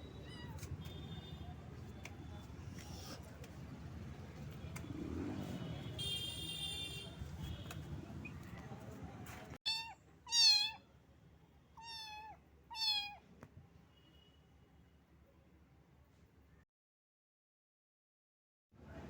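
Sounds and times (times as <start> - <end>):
kitten meowing: 9.7 - 10.8, 11.8 - 13.2.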